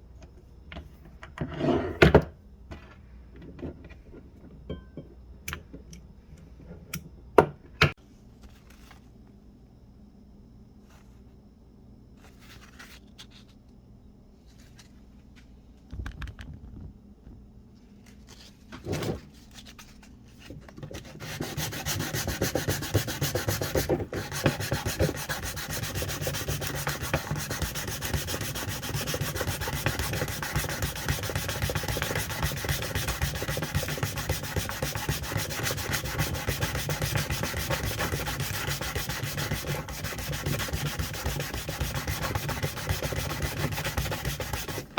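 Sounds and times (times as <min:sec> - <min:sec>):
abrasive sanding scraping: 0:21.0 - 0:44.9.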